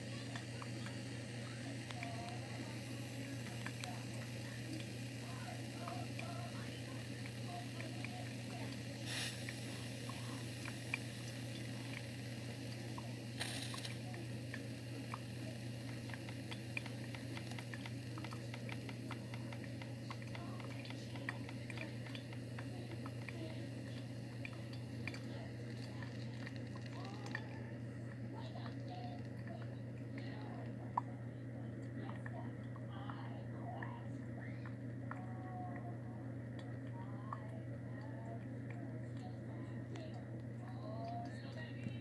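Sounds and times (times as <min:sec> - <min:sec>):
coffee machine hum: 0:00.0 - 0:42.0
small drips and clicks: 0:00.0 - 0:42.0.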